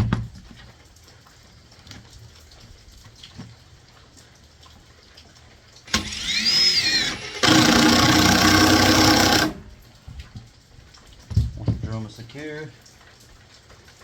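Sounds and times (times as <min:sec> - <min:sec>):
power screwdriver motor whining: 0:05.9 - 0:09.7.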